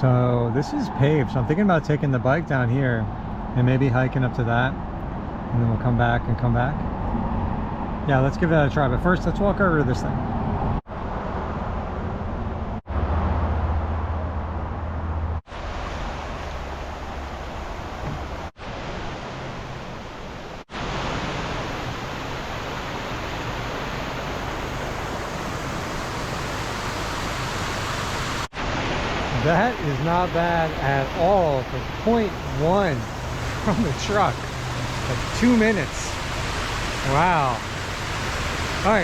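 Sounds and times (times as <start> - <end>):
waterfall rushing: 15.5 - 39.0.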